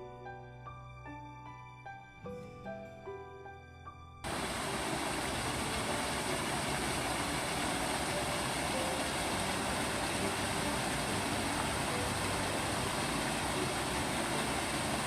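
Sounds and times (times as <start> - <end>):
soft piano music: 0.0 - 15.0
flowing water rushing: 4.2 - 15.0.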